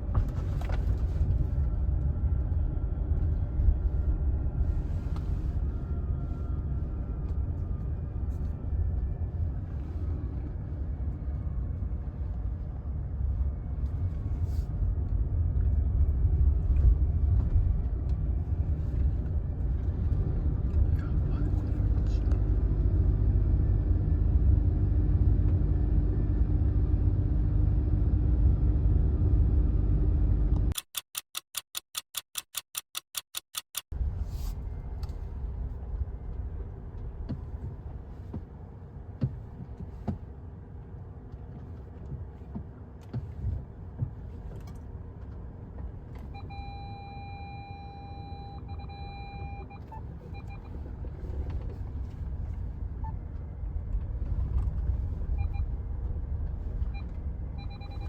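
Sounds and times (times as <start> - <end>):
vehicle rumbling: 0.0 - 30.8, 33.8 - 58.0
short beeping tone: 46.4 - 50.7, 57.6 - 58.0.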